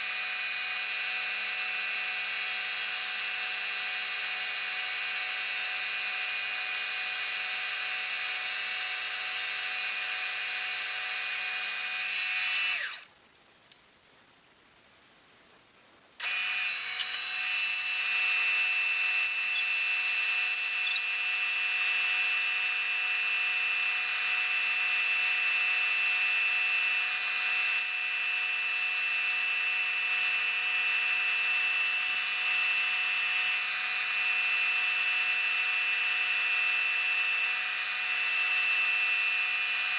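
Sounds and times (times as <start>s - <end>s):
wood lathe motor whine: 0.0s - 13.1s, 16.2s - 39.9s.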